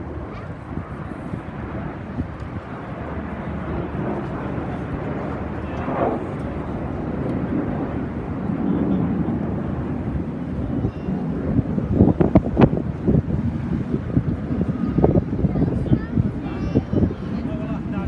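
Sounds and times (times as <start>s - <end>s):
airplane flying past: 0.0s - 18.0s.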